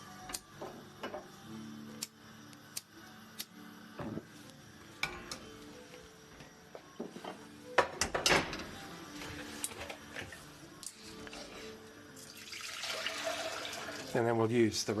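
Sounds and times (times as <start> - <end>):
faint background music: 0.0 - 15.0
pots and utensils clattering: 7.2 - 10.4.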